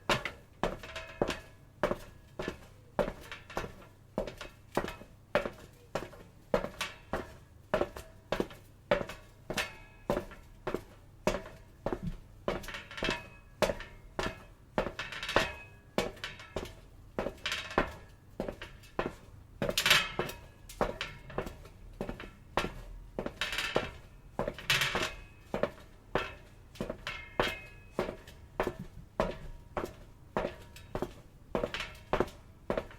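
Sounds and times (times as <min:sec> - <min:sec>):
footsteps on metal: 0:00.0 - 0:32.9.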